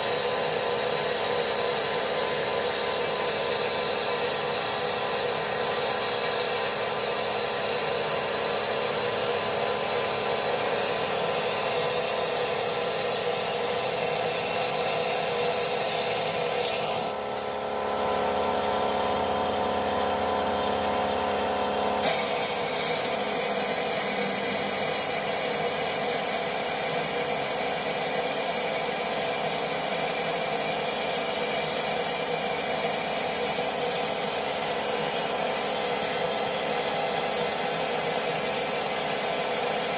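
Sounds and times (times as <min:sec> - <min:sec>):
blasting gun hissing: 0:22.0 - 0:25.9.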